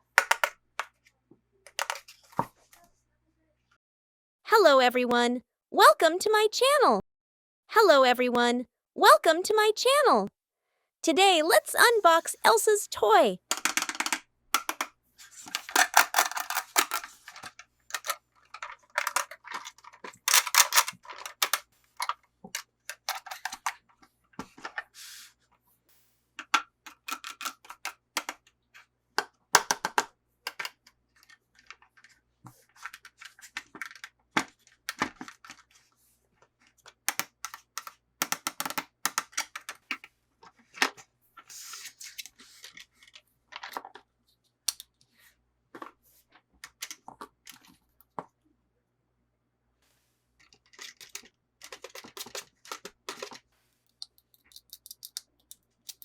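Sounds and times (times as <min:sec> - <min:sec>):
clicks and taps: 0:00.0 - 0:01.0, 0:13.5 - 0:14.9, 0:37.1 - 0:40.0.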